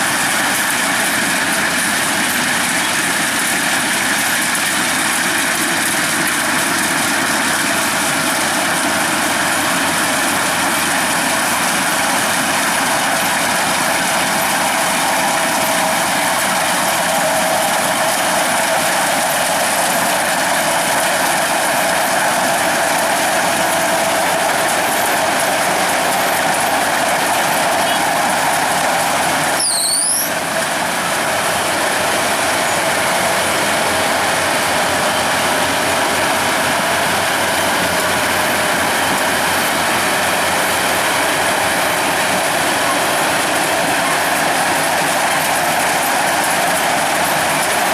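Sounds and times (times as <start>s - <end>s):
combine harvester running: 0.0s - 47.9s
short high squeak: 29.6s - 30.4s.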